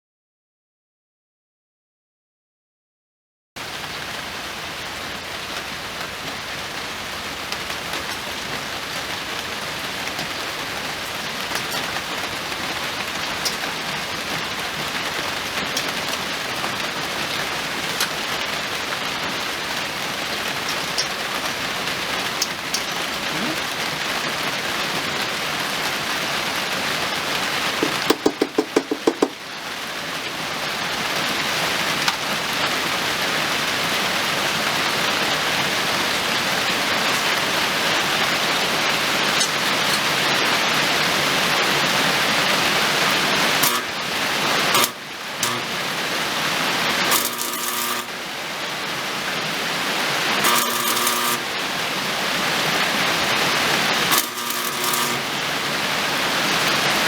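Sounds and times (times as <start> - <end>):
rain-like hiss: 3.6 - 57.0
sharp clicks: 43.6 - 43.9, 54.1 - 55.2
faint ticks: 54.1 - 55.2.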